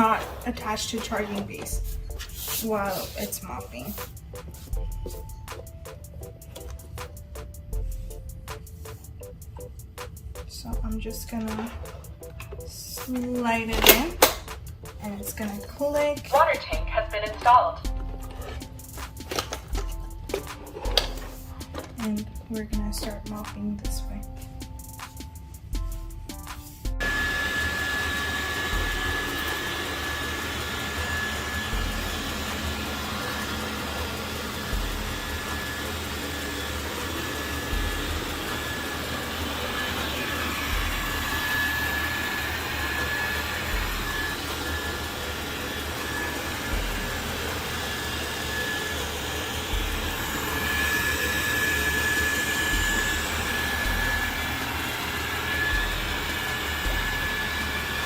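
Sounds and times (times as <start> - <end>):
robot vacuum motor whir: 27.0 - 58.0.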